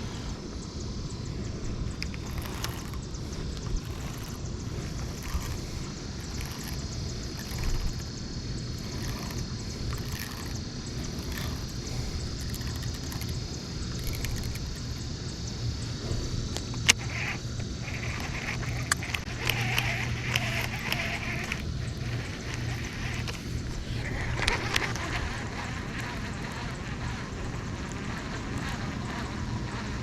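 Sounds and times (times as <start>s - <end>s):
boat engine rumble: 0.0s - 30.0s
sharp click: 16.5s - 23.7s.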